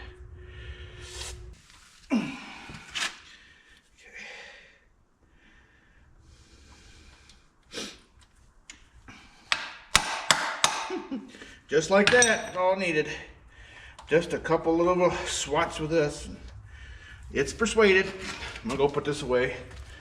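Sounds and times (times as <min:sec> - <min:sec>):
man grunting and exhaling: 0:02.1 - 0:02.9.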